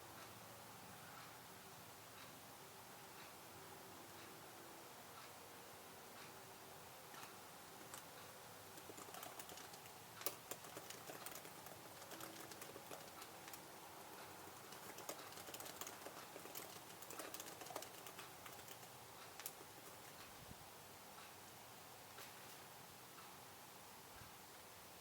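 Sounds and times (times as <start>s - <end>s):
keyboard keystroke clicks: 8.8s - 13.6s, 14.5s - 20.2s.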